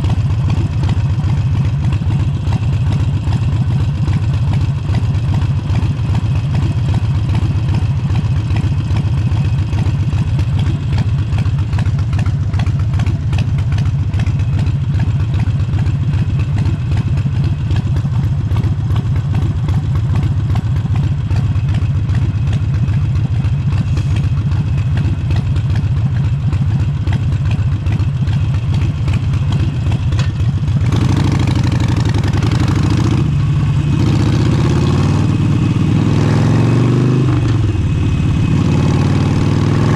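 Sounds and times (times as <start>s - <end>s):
motorcycle engine running: 0.0s - 39.9s
rushing noise: 36.6s - 39.9s.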